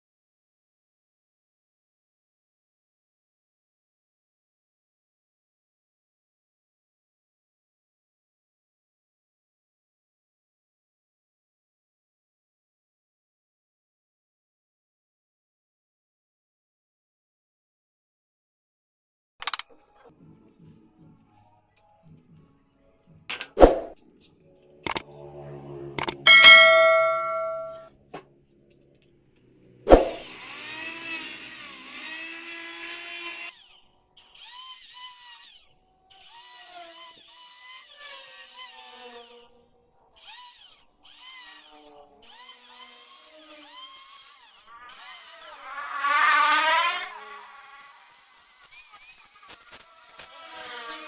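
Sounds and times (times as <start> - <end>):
ringing strike: 26.1 - 27.8.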